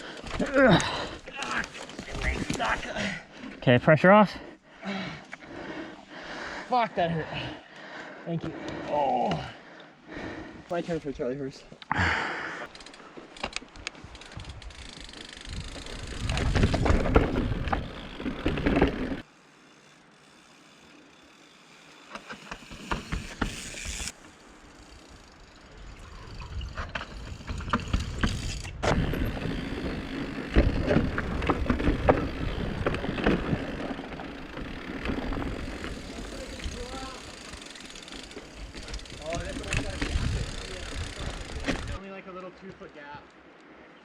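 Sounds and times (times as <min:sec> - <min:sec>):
bike clicking and rattling: 0:00.0 - 0:03.6, 0:12.6 - 0:42.0
bike tires rumbling on dirt: 0:00.0 - 0:03.6, 0:12.0 - 0:42.0.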